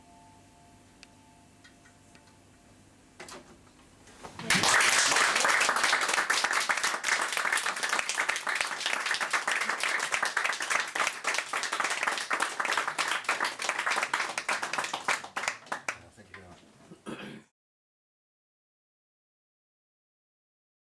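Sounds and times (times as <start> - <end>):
audience applauding: 4.2 - 16.1.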